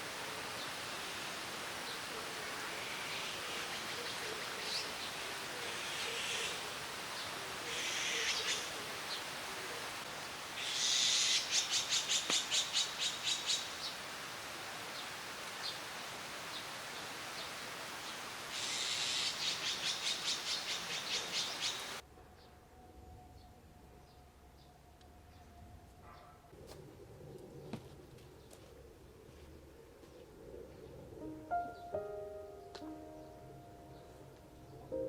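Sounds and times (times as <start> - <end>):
outdoor hiss: 0.0 - 22.0
birds calling: 18.5 - 22.0.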